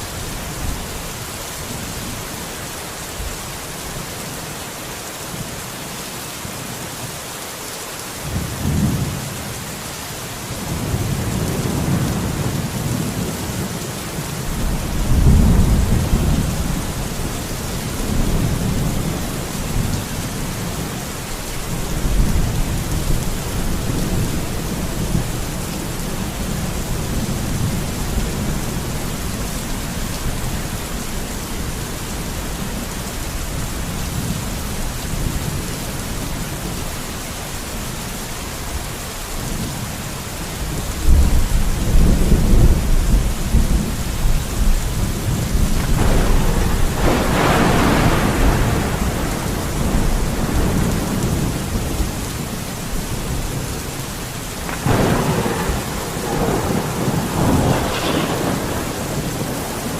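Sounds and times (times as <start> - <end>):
heavy rain hissing: 0.0 - 59.9
thunder rumbling: 10.6 - 36.8, 40.6 - 59.9.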